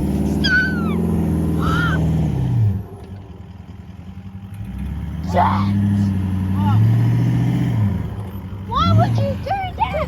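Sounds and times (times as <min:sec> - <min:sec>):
car engine revving: 0:00.0 - 0:10.0
child crying out: 0:00.4 - 0:01.0, 0:01.6 - 0:02.0.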